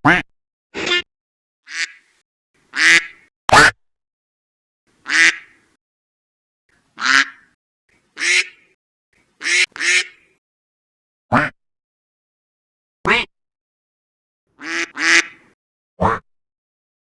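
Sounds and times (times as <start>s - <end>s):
duck quacking: 1.7s - 2.1s, 2.7s - 3.7s, 5.0s - 5.6s, 7.0s - 7.5s, 8.2s - 8.7s, 9.4s - 10.3s, 13.1s - 13.3s, 14.6s - 16.2s.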